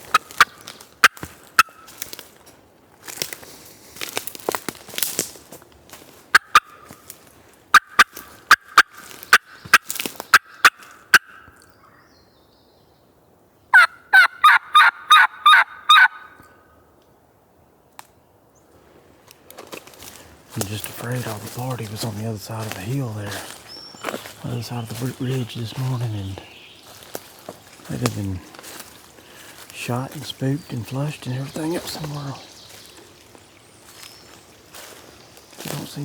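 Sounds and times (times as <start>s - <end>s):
leaves rustling underfoot: 0.0s - 11.1s, 18.6s - 36.0s
turkey clucking and yelping: 6.3s - 7.0s, 7.7s - 11.6s, 13.7s - 16.4s.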